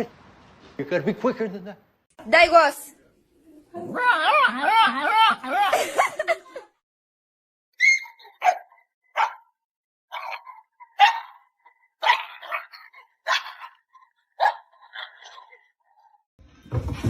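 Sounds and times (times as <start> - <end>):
dog barking: 7.8 - 15.5.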